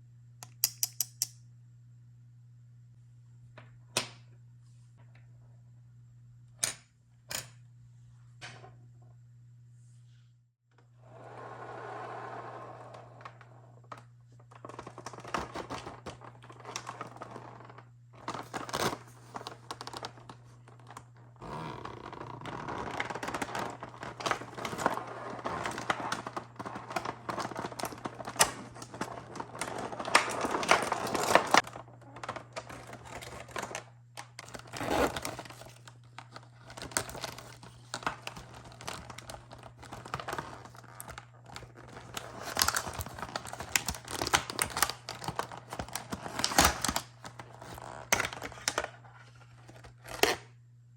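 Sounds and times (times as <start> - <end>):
small clicks and knocks: 0.4 - 1.4
packaging crinkling and tearing: 13.9 - 50.5.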